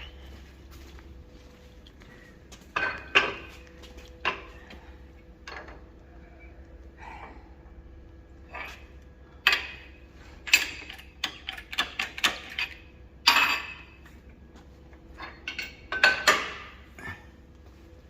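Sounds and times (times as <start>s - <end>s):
metallic clanks and knocks: 2.7s - 4.6s, 15.1s - 16.8s.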